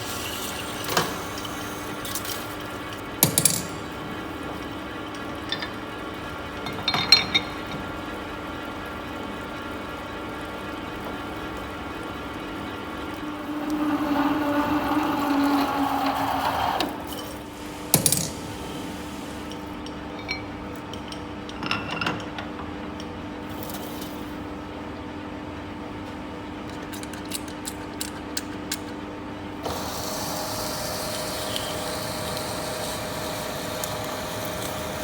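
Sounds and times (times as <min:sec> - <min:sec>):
metal lathe humming: 0:11.0 - 0:19.8, 0:29.6 - 0:35.0.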